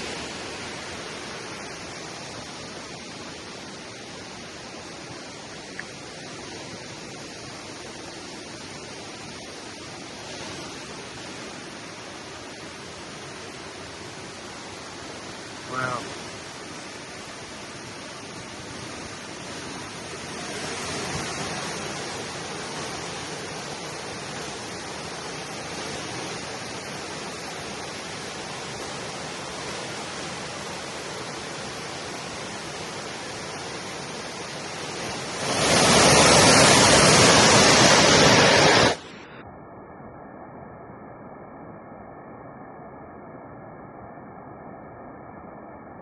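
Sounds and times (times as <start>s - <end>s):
waterfall rushing: 0.0s - 39.3s
faint steady tones: 37.8s - 46.0s.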